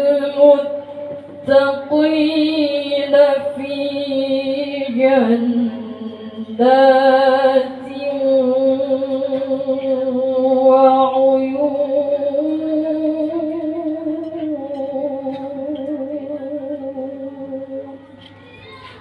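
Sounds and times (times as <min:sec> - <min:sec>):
person reciting melodically: 0:00.0 - 0:18.9.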